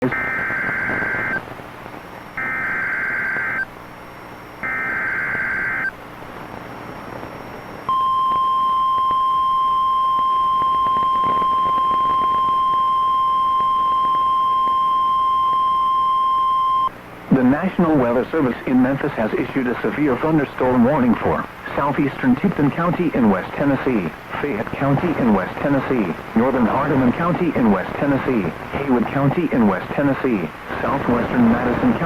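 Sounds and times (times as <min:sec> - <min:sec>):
steady warning alarm tone: 0:00.0 - 0:01.4, 0:02.4 - 0:03.7, 0:04.6 - 0:06.0
radio hiss: 0:00.0 - 0:09.2, 0:16.5 - 0:32.0.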